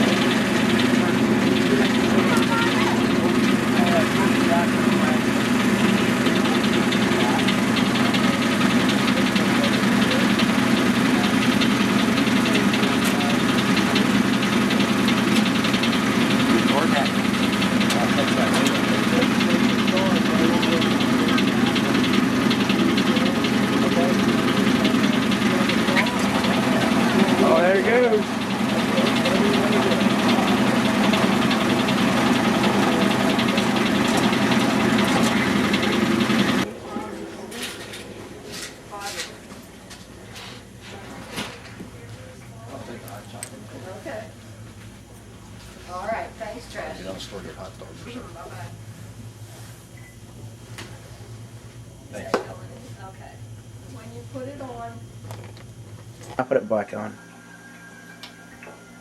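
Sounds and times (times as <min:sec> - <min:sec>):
machine motor with fast rattle: 0:00.0 - 0:36.7.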